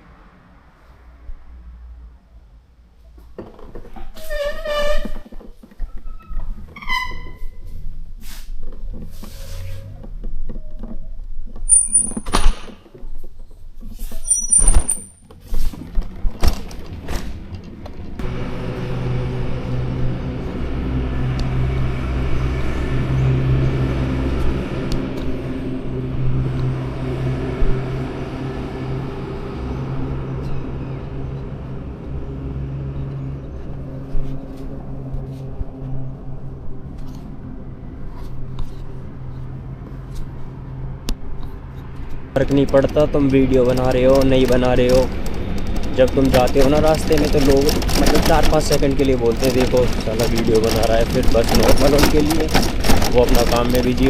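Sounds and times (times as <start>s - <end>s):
handling knocks and clicks: 8.6s - 18.2s, 41.1s - 54.0s
vehicle engine running: 16.2s - 54.0s.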